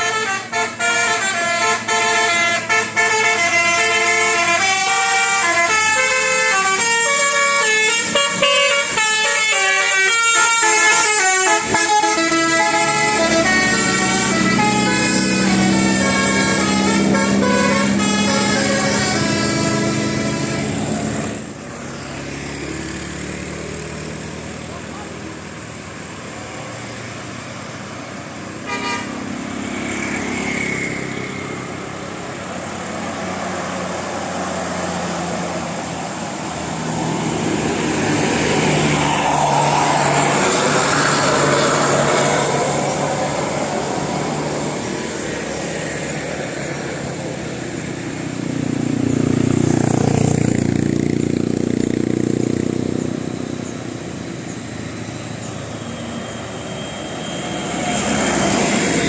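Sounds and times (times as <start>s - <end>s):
vehicle horn: 0.0s - 21.4s, 28.6s - 31.4s
bus engines climbing hill: 0.0s - 59.0s.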